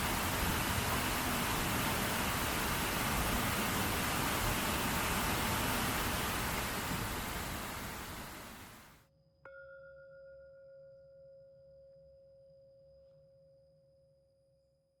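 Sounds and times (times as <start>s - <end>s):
rushing waterfall: 0.0s - 9.0s.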